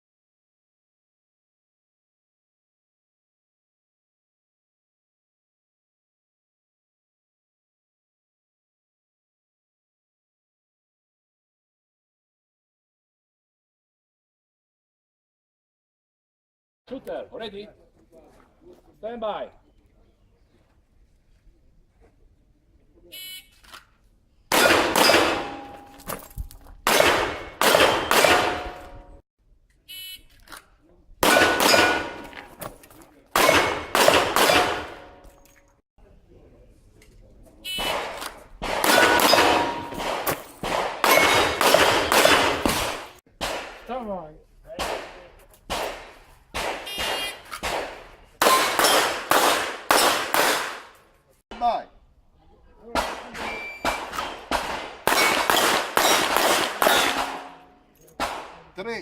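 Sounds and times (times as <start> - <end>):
revolver shots echoing: 24.5 - 26.0, 26.9 - 29.0, 33.4 - 35.2, 53.2 - 58.4
handgun shots: 24.5 - 26.2, 26.9 - 29.0, 31.2 - 32.7, 33.4 - 35.3, 37.8 - 43.8, 44.8 - 51.0, 53.0 - 58.6
bullets ringing on steel targets: 24.5 - 26.3, 26.9 - 29.2, 31.2 - 32.6, 33.4 - 35.4, 38.7 - 42.7, 48.4 - 50.8, 55.1 - 58.4
steel targets ringing: 24.6 - 26.2, 31.3 - 32.4, 38.9 - 40.1, 41.0 - 42.5, 55.1 - 57.9
shot timer beep: 53.5 - 54.0.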